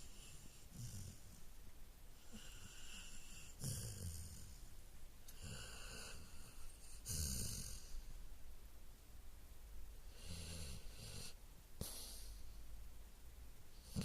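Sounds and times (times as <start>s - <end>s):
dog snoring: 0.0s - 1.4s, 2.2s - 4.7s, 5.3s - 8.1s, 10.1s - 12.3s, 13.8s - 14.0s.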